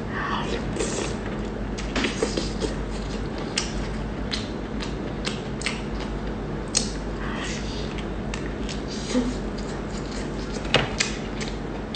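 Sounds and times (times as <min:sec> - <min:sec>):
crunchy chewing: 0:07.9 - 0:11.9.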